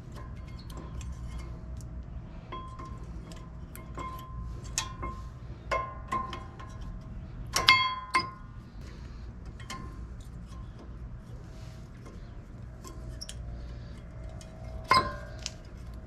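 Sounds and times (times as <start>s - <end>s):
metal tools clinking: 12.8s - 16.0s.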